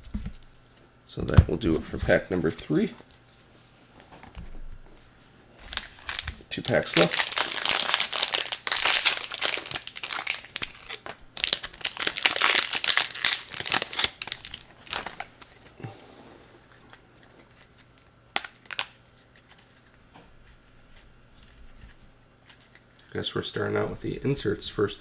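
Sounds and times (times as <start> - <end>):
wrapper crinkling and tearing: 5.6 - 15.6, 17.4 - 19.5.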